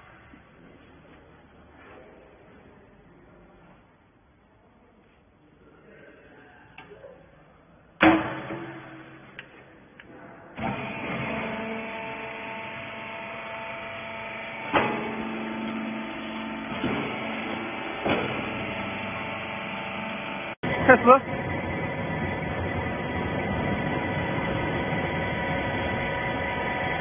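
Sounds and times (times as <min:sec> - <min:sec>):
baler motor humming: 0:10.6 - 0:27.0
machine knocks: 0:14.7 - 0:18.9.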